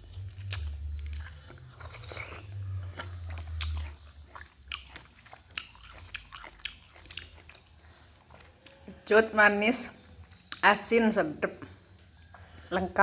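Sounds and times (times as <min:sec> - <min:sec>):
crunchy chewing: 0:00.0 - 0:09.1, 0:10.0 - 0:10.9.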